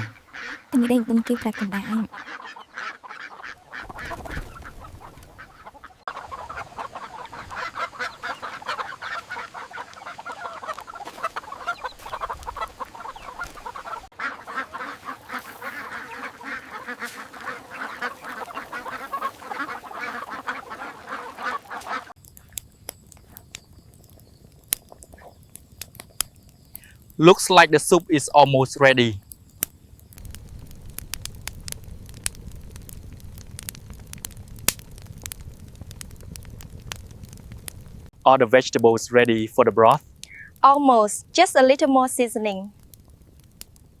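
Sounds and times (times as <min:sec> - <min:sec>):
ducks quacking: 0:00.0 - 0:22.2.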